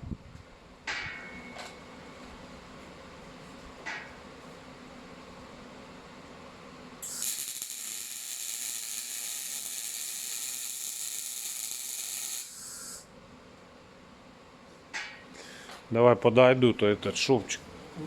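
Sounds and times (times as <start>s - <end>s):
welding arc crackling and hissing: 7.0s - 13.1s.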